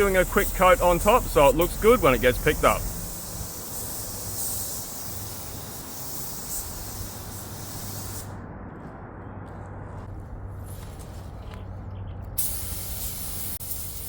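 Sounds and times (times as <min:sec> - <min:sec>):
low steady hum: 0:00.0 - 0:04.2, 0:06.6 - 0:12.4
paint sprayer hissing: 0:00.0 - 0:08.4, 0:12.4 - 0:14.0.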